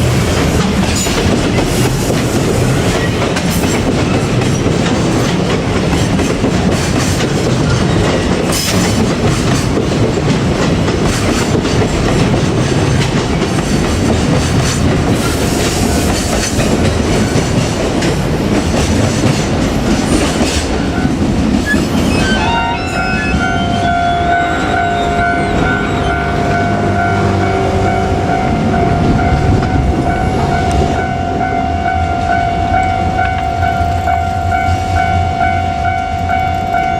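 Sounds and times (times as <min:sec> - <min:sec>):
freight train wheels clattering: 0:00.0 - 0:35.1
pitched tone: 0:21.7 - 0:36.9.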